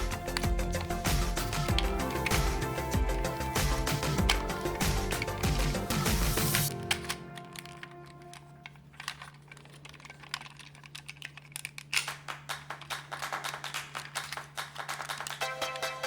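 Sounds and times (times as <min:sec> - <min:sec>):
plastic toy parts clicking: 0:00.0 - 0:15.4.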